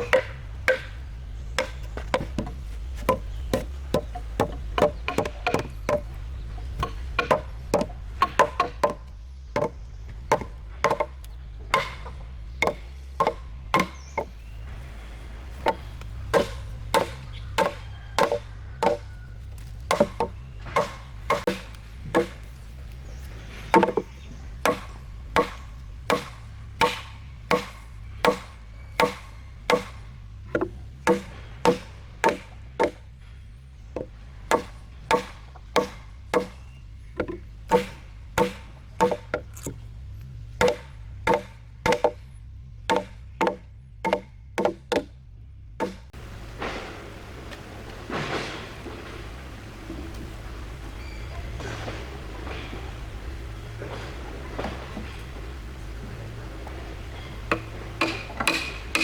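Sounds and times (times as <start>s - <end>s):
tool chopping into wood: 0.0s - 14.5s, 15.6s - 33.1s, 33.9s - 39.8s, 40.6s - 42.2s, 42.9s - 45.1s, 45.8s - 47.0s, 57.5s - 59.0s.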